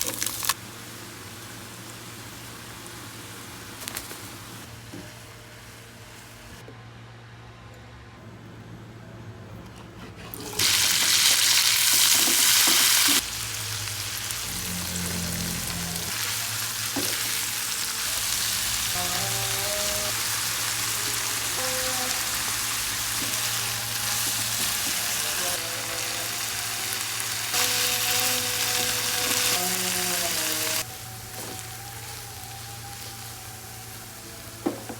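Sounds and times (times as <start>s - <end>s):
food sizzling in hot oil: 10.6s - 34.9s.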